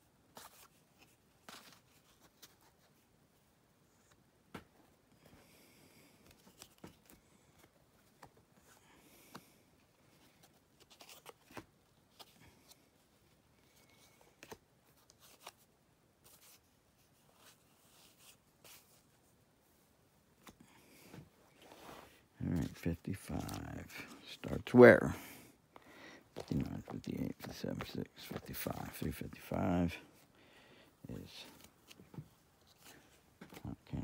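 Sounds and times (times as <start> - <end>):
cards clicking and rustling: 10.2 - 12.8, 13.7 - 15.7, 22.6 - 24.8, 26.3 - 29.8.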